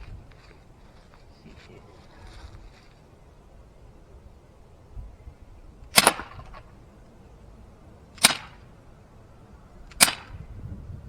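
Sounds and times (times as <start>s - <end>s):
air pistol shots popping: 5.9s - 6.7s, 8.2s - 8.7s, 9.9s - 10.5s.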